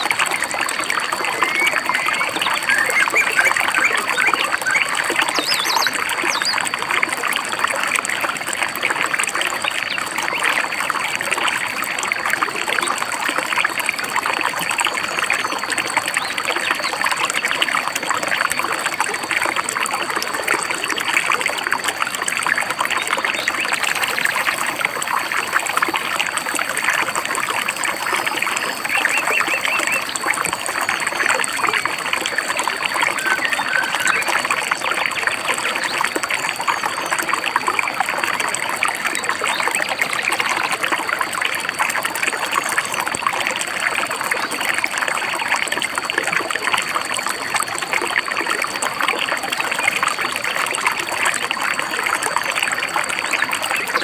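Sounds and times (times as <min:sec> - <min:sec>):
stream babbling over rocks: 0:00.0 - 0:54.0
bird chirps: 0:01.3 - 0:06.6, 0:28.2 - 0:30.3, 0:32.8 - 0:34.4.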